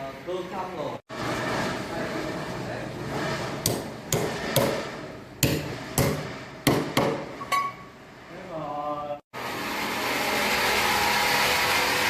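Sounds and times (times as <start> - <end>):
hammer striking: 3.6 - 7.9.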